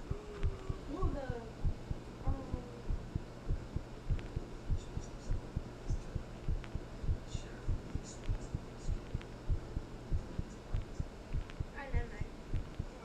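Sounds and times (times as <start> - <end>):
faint low hum: 0.0 - 13.0
heartbeat thuds: 0.0 - 13.0
faint high ticks: 10.5 - 11.8.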